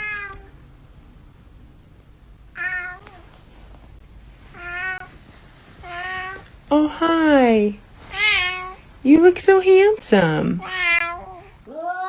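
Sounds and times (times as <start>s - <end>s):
cat meowing: 0.0s - 0.5s, 2.6s - 3.3s, 4.5s - 5.1s, 5.8s - 6.4s, 8.1s - 8.8s, 10.6s - 12.0s
person talking: 6.7s - 7.8s, 9.0s - 10.7s.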